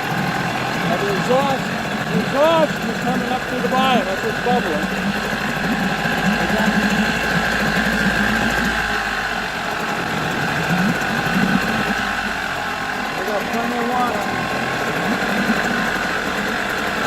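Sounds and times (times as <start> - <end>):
exhaust bubbling in water: 0.0 - 17.0
outboard motor running: 0.0 - 17.0.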